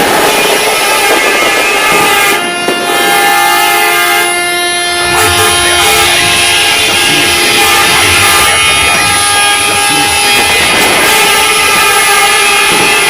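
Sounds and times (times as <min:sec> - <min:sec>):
loud vehicle horns: 0:00.0 - 0:13.0
noisy background: 0:04.7 - 0:13.0.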